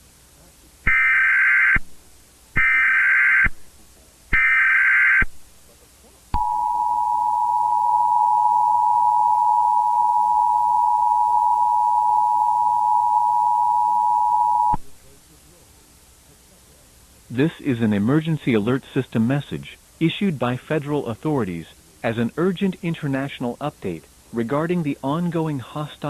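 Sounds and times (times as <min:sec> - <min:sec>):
data bursts: 0:06.4 - 0:14.8
two-tone attention signal: 0:06.4 - 0:14.8.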